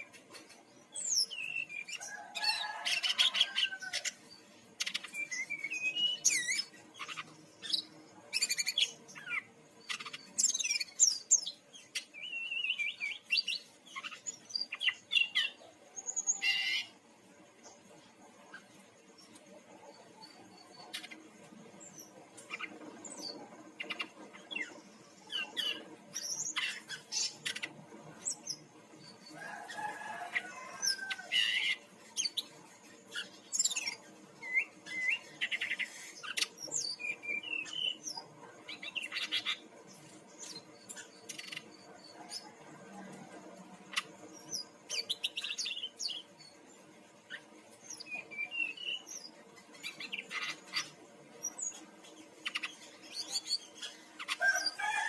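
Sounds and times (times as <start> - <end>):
bird singing chirps and trills: 0.0 - 55.0.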